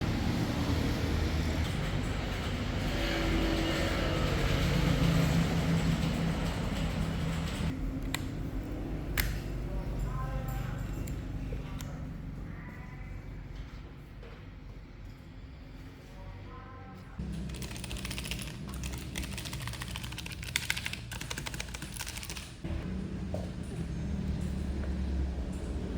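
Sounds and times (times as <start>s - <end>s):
low engine rumble: 0.0s - 13.7s, 22.6s - 25.9s
mechanical keyboard typing: 17.3s - 22.6s.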